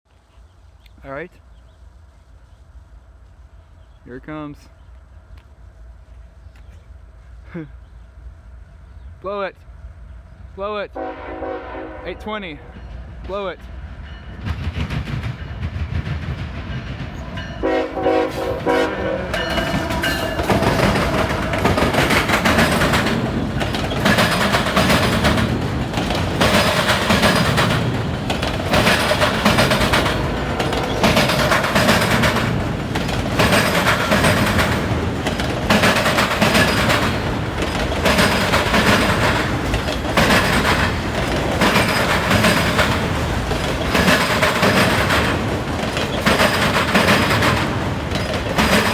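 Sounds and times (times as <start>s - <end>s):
rumble of train cars: 0.1s - 48.9s
locomotive air horn: 11.0s - 12.7s, 17.6s - 22.0s
wheels banging over rail crossing: 14.1s - 48.9s.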